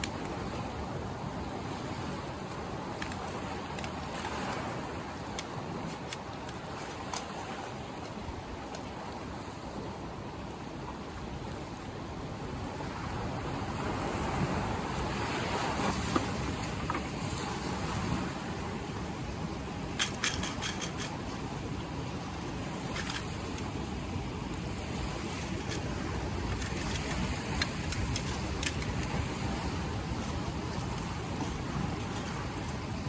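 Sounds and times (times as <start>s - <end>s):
sea surf: 0.0s - 20.0s
wind: 0.0s - 33.0s
small clicks: 20.0s - 23.8s, 25.3s - 25.9s, 26.5s - 32.9s.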